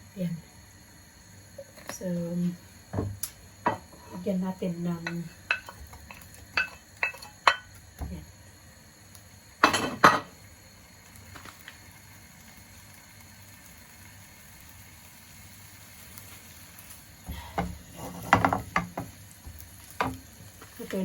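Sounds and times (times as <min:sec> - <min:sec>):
onion sizzling in pan: 0:00.0 - 0:21.0
stirring clatter: 0:05.0 - 0:07.7
utensil knocking on pan: 0:05.0 - 0:07.7, 0:17.6 - 0:19.1, 0:20.0 - 0:20.2.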